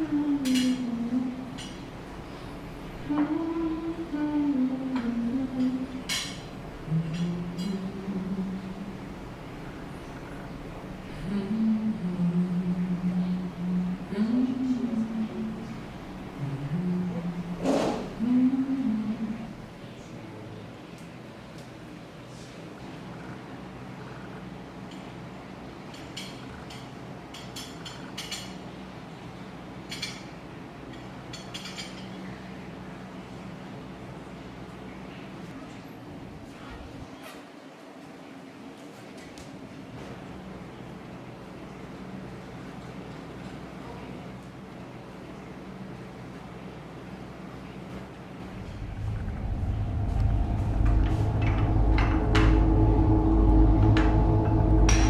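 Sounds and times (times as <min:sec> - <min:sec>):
steady tones: 0:00.0 - 0:19.8, 0:48.4 - 0:55.0
low rumbling drone: 0:00.0 - 0:19.9, 0:48.2 - 0:55.0
steady low hum: 0:00.0 - 0:20.4, 0:40.4 - 0:55.0
sudden sharp sound: 0:48.4 - 0:55.0.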